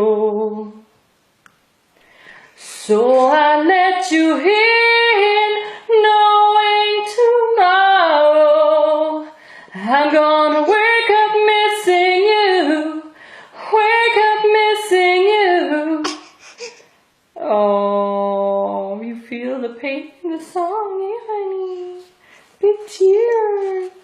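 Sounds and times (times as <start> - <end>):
woman singing a cappella: 0.0 - 1.0, 2.6 - 16.1, 17.4 - 24.0
singer breathing: 2.0 - 2.6, 9.4 - 9.8, 13.2 - 13.6, 22.1 - 22.6.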